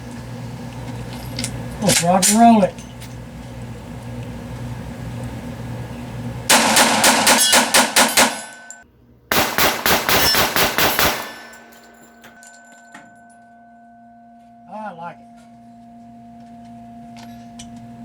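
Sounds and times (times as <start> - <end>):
pistol shots: 6.5 - 8.6, 9.3 - 11.9.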